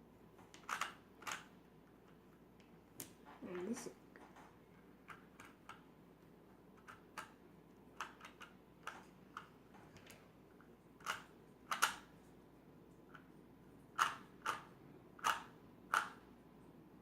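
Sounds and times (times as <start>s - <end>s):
plastic puzzle cube clicks: 0.5s - 1.5s, 8.0s - 10.2s, 11.0s - 12.1s, 14.0s - 16.2s.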